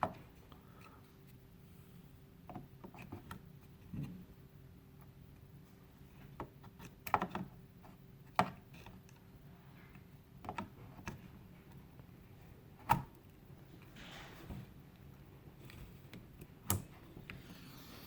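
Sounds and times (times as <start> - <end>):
faint steady hum: 0.0 - 18.0.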